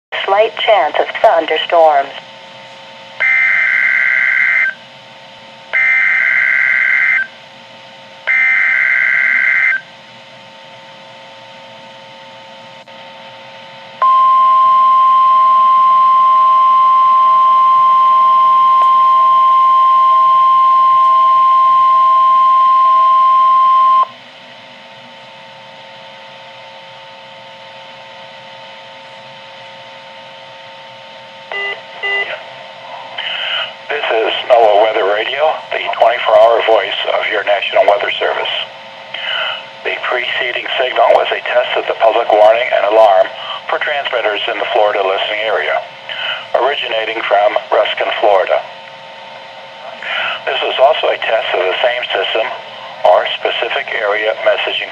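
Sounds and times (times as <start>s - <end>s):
faint steady hum: 0.2s - 54.9s
single-pitch warning alarm tone: 3.2s - 4.9s, 5.7s - 7.4s, 8.2s - 10.0s, 14.0s - 24.2s, 31.5s - 32.4s
warbling digital data tones: 5.8s - 7.3s, 8.3s - 9.9s.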